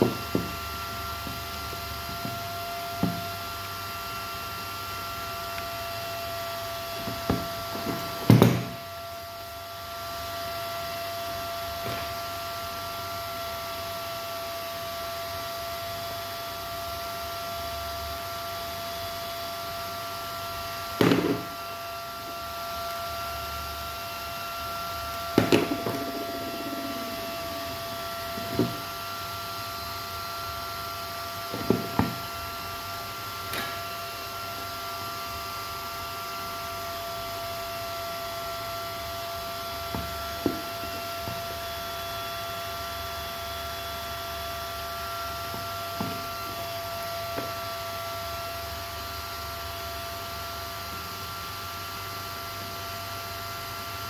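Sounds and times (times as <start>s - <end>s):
tools knocking on workbench: 0.0s - 0.6s, 3.0s - 3.3s, 7.0s - 8.8s, 21.0s - 21.5s, 25.4s - 28.9s, 31.5s - 32.2s, 40.0s - 41.4s, 46.0s - 46.3s.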